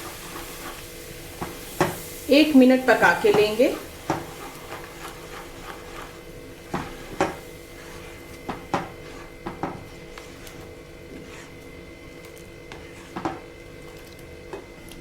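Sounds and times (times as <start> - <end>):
spoon scraping a cooking pan: 0.0 - 2.0, 3.0 - 11.7, 12.6 - 14.6.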